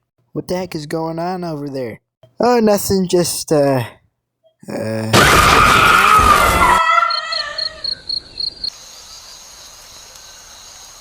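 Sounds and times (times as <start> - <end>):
loud engine-like screeching: 5.3 - 7.9
crickets chirping: 6.8 - 11.0.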